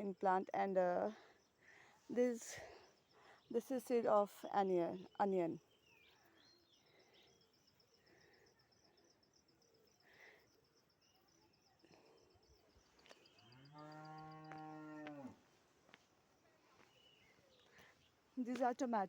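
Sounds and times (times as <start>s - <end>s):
cow mooing: 13.6s - 15.4s.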